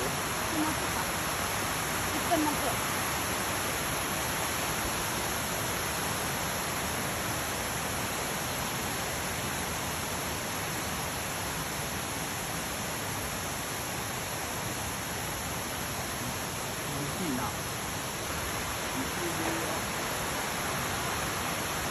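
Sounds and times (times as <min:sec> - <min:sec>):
waterfall crashing down: 0:00.0 - 0:21.9.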